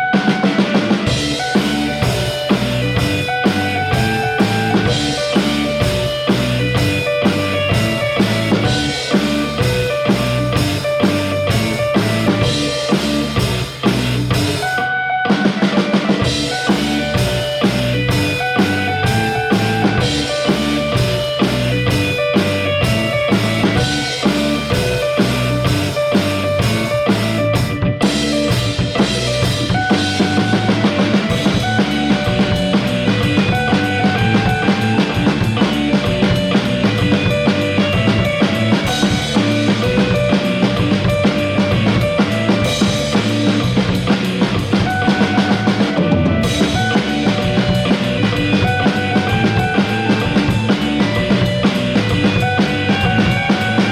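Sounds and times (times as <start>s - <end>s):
bass: 0.0s - 53.9s
guitar: 0.0s - 53.9s
rock drum kit playing: 0.0s - 53.9s.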